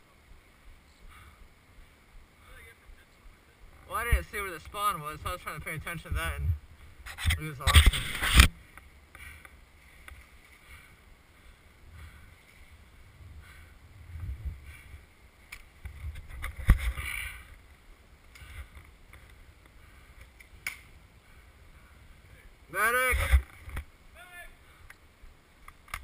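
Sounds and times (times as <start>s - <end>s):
wind rumbling on microphone: 11.8s - 19.8s.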